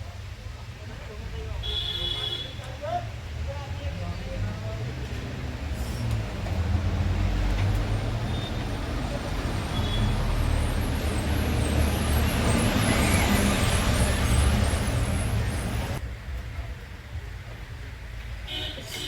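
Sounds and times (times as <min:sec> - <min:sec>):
vehicle engine running: 0:03.9 - 0:16.0.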